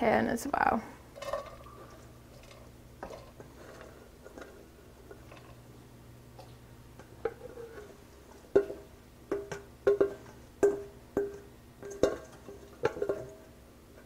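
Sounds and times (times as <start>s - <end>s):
spoon tapping cookware: 8.5s - 13.5s.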